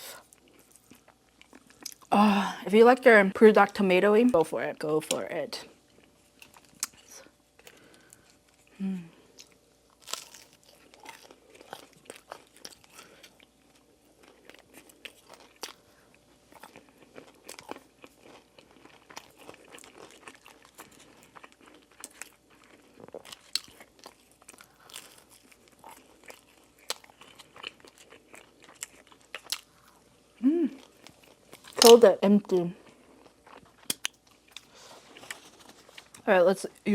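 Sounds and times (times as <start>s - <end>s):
person chewing and eating: 0.0s - 2.1s, 5.8s - 32.1s, 32.7s - 36.3s.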